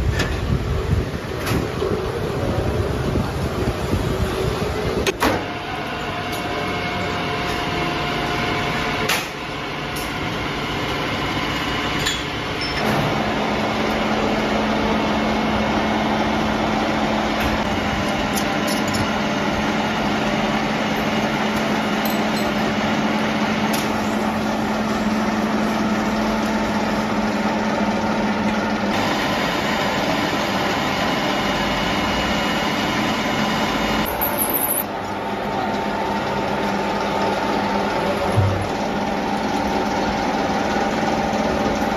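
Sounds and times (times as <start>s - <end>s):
machinery running: 0.0s - 41.9s.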